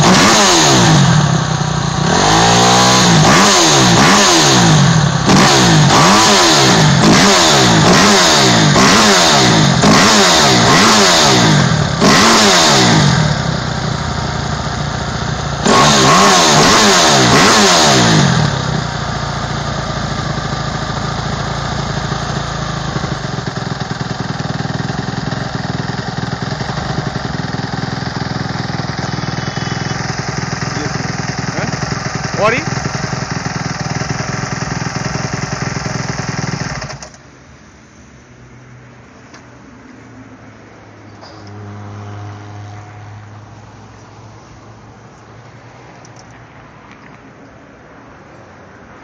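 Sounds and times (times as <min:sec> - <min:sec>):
motorcycle engine revving and idling: 0:00.0 - 0:37.3.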